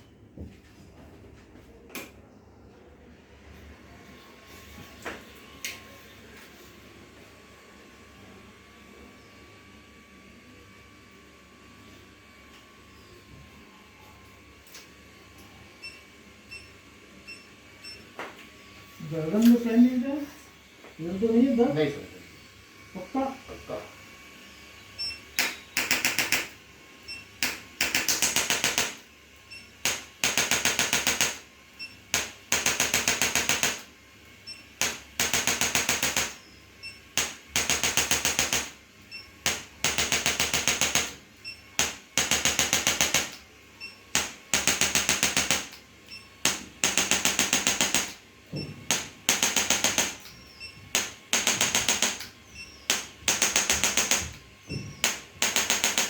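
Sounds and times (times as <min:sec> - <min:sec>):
bursts of rapid electric taps: 0:25.4 - 0:26.6, 0:27.4 - 0:29.1, 0:29.8 - 0:31.5, 0:32.1 - 0:33.9, 0:34.8 - 0:36.5, 0:37.1 - 0:38.8, 0:39.4 - 0:41.2, 0:41.8 - 0:43.5, 0:44.1 - 0:45.8, 0:46.4 - 0:48.2, 0:48.9 - 0:56.0.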